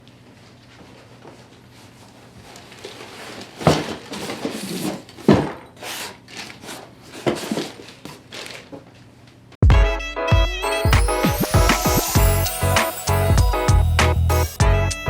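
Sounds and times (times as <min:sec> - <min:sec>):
rustling and scraping: 0:00.1 - 0:09.1.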